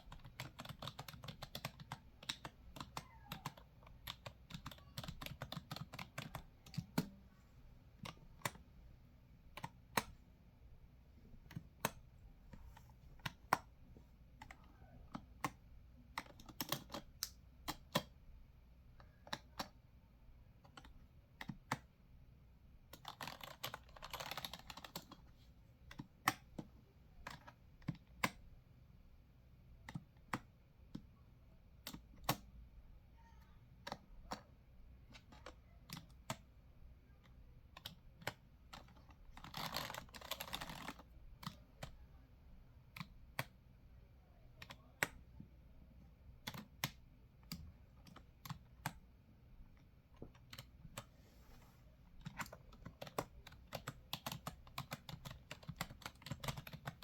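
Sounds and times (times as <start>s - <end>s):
keyboard keys clicking: 0.0s - 7.2s, 14.4s - 18.2s, 22.9s - 25.3s, 37.7s - 42.0s, 44.6s - 45.2s, 46.4s - 49.0s, 52.2s - 57.0s.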